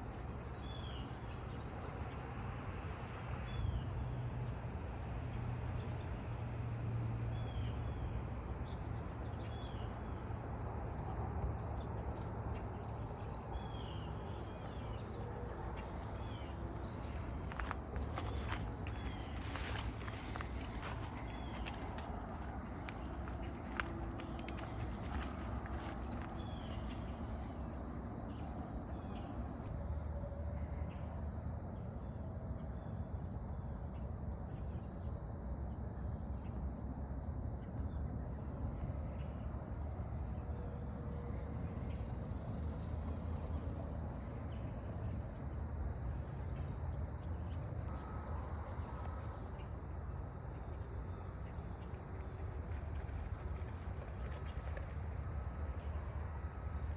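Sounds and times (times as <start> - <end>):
insects trilling: 0.0 - 56.9.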